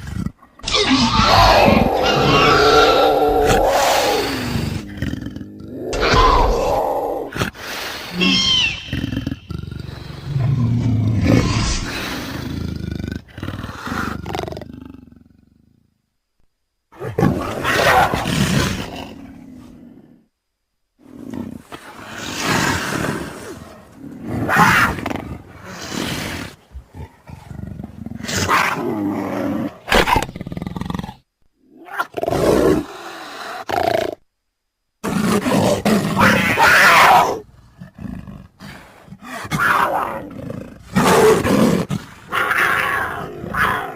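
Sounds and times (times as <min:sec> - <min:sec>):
creature snarling calls: 0:00.0 - 0:12.7, 0:35.0 - 0:37.4, 0:38.6 - 0:43.9.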